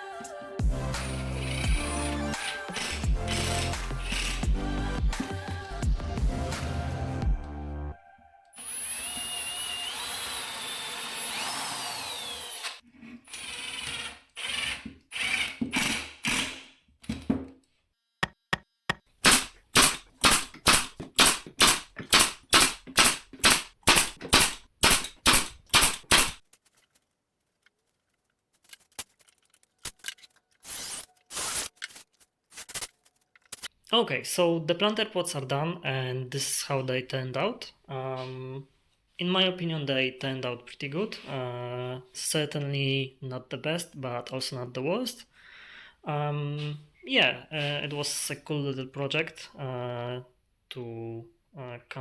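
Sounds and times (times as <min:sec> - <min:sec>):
drill driving screws into wood: 0:01.0 - 0:04.5, 0:08.6 - 0:16.8, 0:19.2 - 0:26.4, 0:30.6 - 0:31.7.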